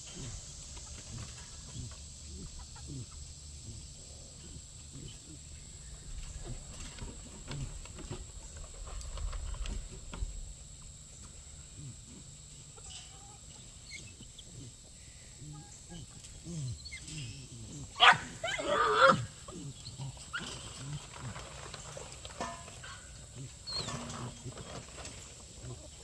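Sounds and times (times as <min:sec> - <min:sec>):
poultry calling: 0:00.0 - 0:08.2, 0:11.5 - 0:26.0
dog barking: 0:17.8 - 0:19.3.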